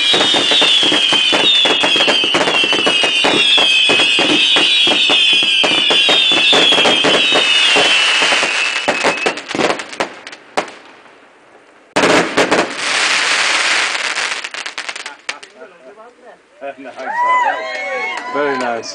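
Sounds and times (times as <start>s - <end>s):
fireworks whistling: 0.0s - 10.8s, 11.9s - 15.6s
fireworks crackling bangs: 0.0s - 15.9s
dense crackling hiss: 0.0s - 18.9s.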